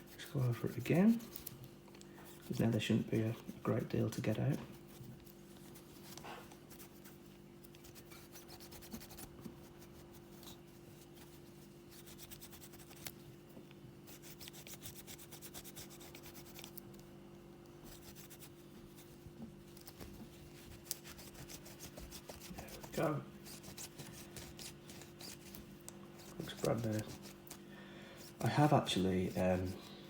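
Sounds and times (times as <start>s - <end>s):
steady low hum: 0.0s - 30.0s
cloth rubbing on metal: 17.8s - 30.0s.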